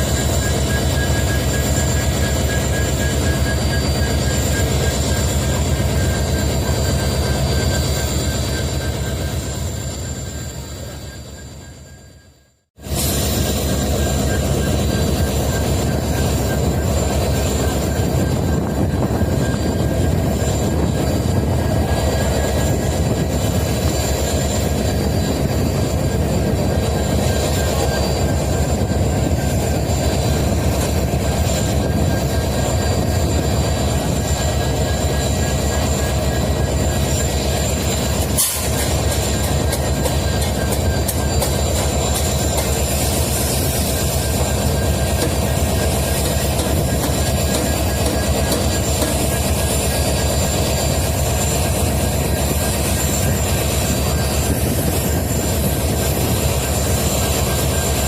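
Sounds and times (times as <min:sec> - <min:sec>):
locomotive diesel engine hum: 0:12.8 - 0:58.0.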